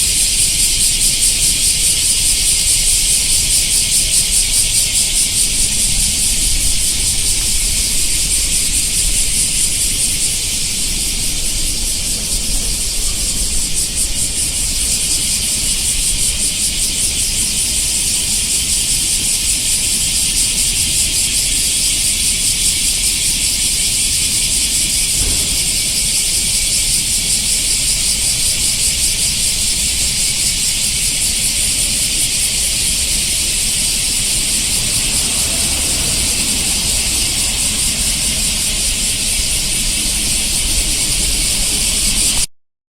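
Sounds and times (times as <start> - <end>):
cicadas buzzing: 0.0 - 42.5.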